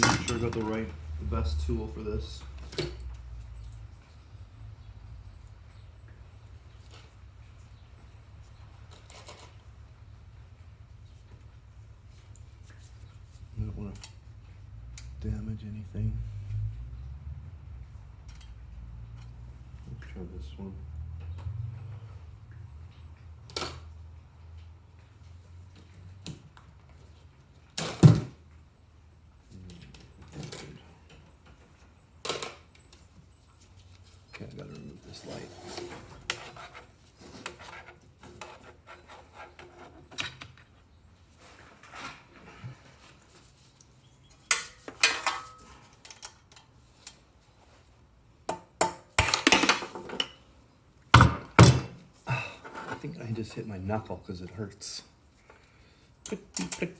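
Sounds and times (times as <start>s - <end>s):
hand tools clanking on metal: 0.0s - 1.0s, 44.4s - 47.2s.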